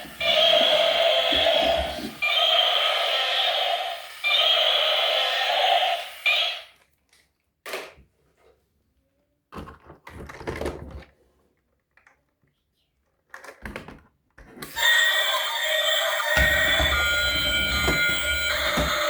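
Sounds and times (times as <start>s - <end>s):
tinny electronic toy sound: 14.7s - 19.0s.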